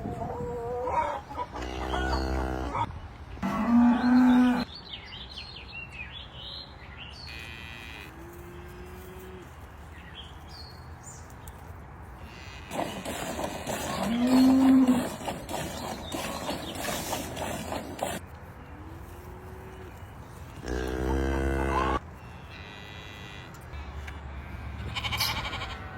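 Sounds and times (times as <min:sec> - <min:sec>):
cow mooing: 0:01.6 - 0:04.7, 0:13.9 - 0:15.2, 0:20.6 - 0:23.5
small birds chirping: 0:12.7 - 0:18.2.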